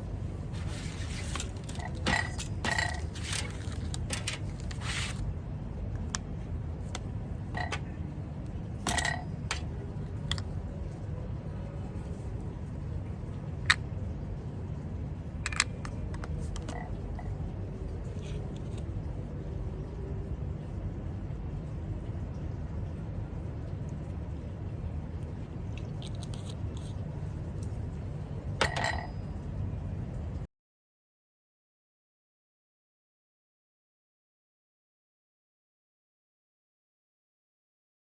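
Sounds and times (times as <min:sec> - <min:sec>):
low room hum: 0:00.0 - 0:30.5.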